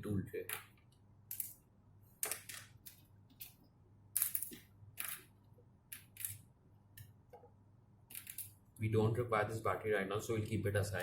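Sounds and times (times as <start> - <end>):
small parts clicking in a tray: 5.9 - 6.4, 8.1 - 8.6.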